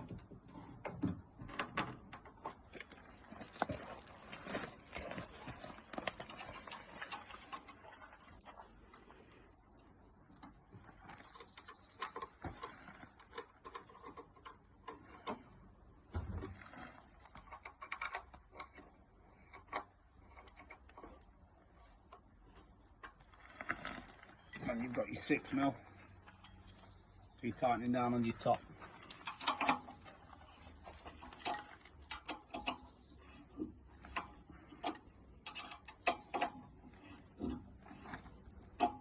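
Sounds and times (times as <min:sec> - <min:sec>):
metal keys and fittings clicking: 0:34.8 - 0:37.2.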